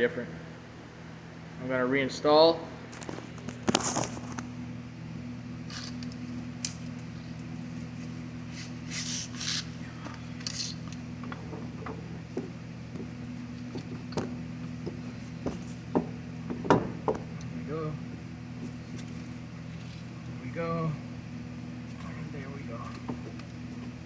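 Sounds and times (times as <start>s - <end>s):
steady low hum: 0.0s - 24.0s
metallic clinks and scrapes: 8.5s - 11.0s.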